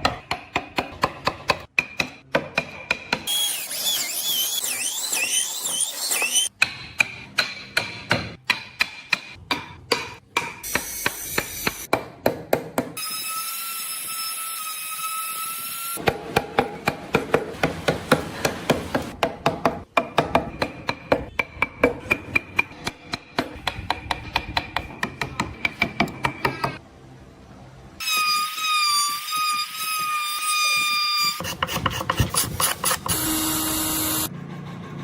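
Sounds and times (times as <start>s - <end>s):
mallet tapping chisel into wood: 6.6s - 10.8s.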